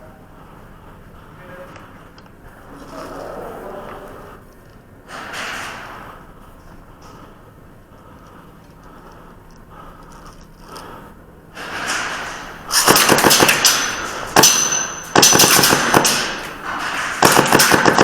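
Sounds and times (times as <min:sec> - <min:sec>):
airsoft gun rapid bursts: 0:12.7 - 0:16.4, 0:17.2 - 0:18.0.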